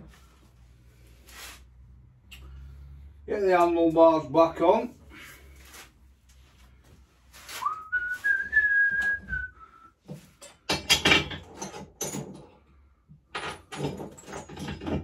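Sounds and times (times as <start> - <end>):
man whistling: 7.6 - 10.0
clattering knocks of parts: 10.4 - 15.0.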